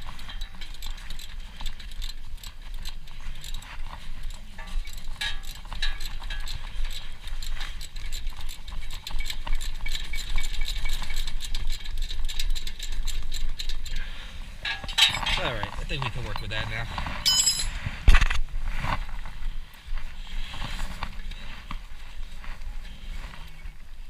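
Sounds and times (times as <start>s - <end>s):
ratchet wrench clicking: 0.0s - 14.0s.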